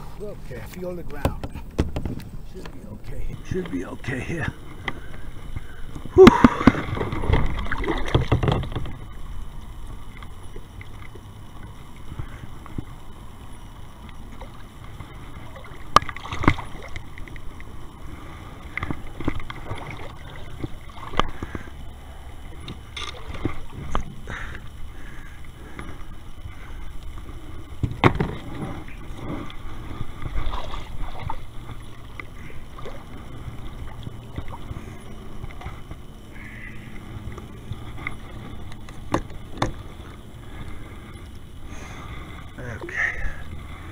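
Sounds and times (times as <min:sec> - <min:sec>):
steady low rumble: 0:00.0 - 0:43.9
knocks and bumps on a kayak: 0:01.1 - 0:02.7, 0:06.2 - 0:09.0, 0:27.8 - 0:29.4, 0:38.9 - 0:39.9.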